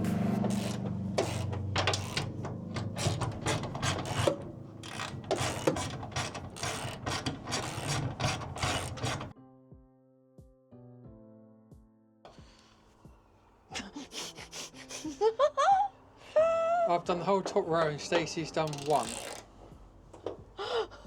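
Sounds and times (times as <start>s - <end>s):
music: 0.0s - 0.6s, 9.3s - 17.6s
ratchet clicking: 0.1s - 9.3s, 18.5s - 19.6s.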